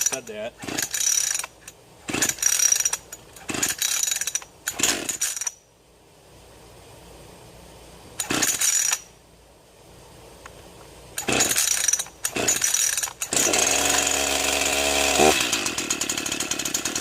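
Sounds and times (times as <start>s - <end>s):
chainsaw engine sputtering and idling: 0.0s - 1.5s, 2.1s - 5.3s, 8.2s - 8.8s, 11.2s - 17.0s
recoil starter pulled: 11.2s - 17.0s.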